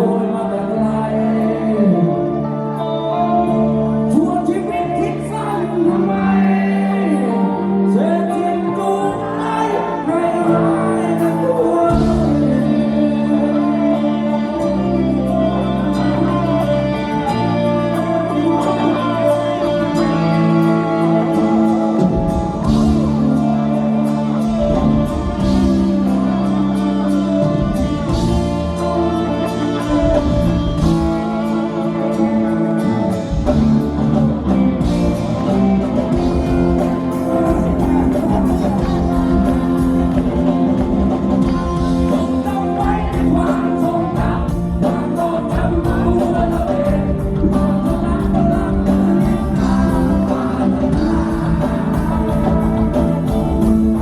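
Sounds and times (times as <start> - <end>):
guitar: 0.0 - 54.0
lead vocal singing: 0.0 - 54.0
steady drum beat: 33.1 - 54.0.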